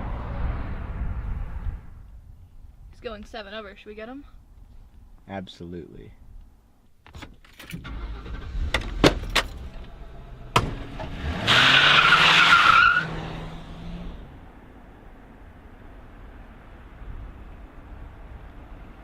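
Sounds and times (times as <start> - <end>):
car engine revving: 7.9 - 14.3
tires squealing: 10.2 - 14.2.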